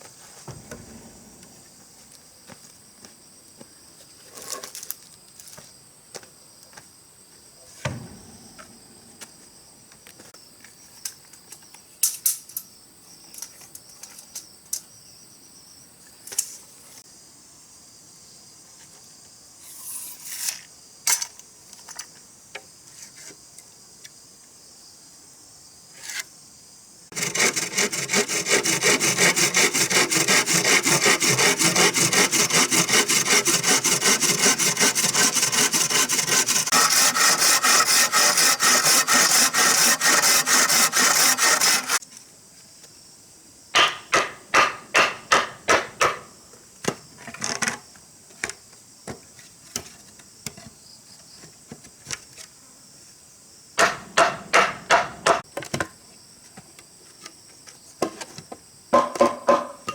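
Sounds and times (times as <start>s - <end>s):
insects chirring: 0.4s - 44.9s
hand saw cutting wood: 27.1s - 42.0s.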